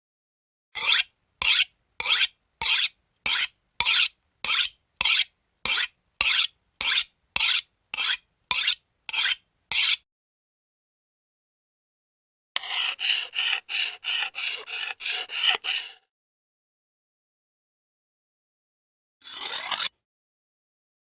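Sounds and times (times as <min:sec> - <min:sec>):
knife rasping on a sharpener: 0:00.8 - 0:10.0, 0:12.6 - 0:16.0, 0:19.2 - 0:19.9.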